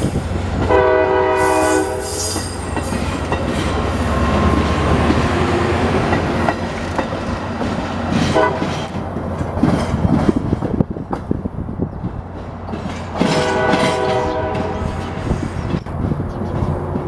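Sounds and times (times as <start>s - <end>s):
diesel train engine rumble: 0.0s - 17.0s
short train horn blip: 0.7s - 2.5s, 13.2s - 15.2s
wheels clicking over rail joints: 2.3s - 17.0s.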